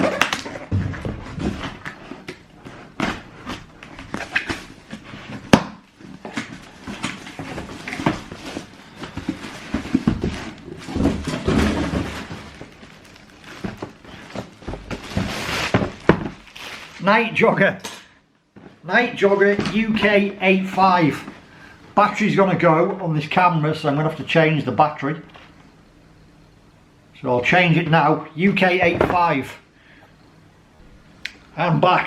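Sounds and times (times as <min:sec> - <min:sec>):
cardboard box and paper rustling: 0:06.0 - 0:17.0.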